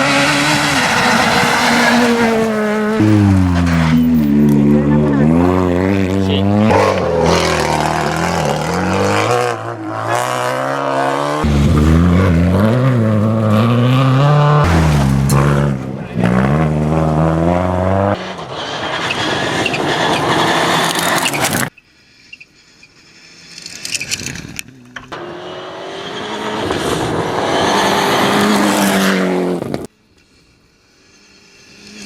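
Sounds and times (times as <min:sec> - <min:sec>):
tyres rushing on gravel: 0:00.0 - 0:05.4, 0:18.2 - 0:21.7
rally car engine revving: 0:00.0 - 0:21.7, 0:24.7 - 0:29.9.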